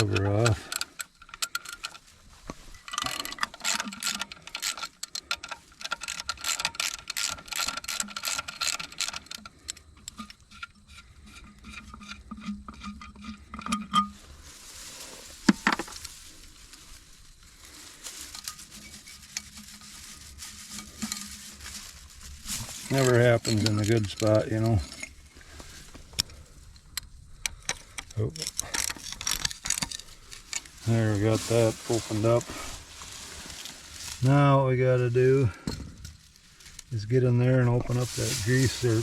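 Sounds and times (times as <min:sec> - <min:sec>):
metal clinks: 0:22.4 - 0:25.2.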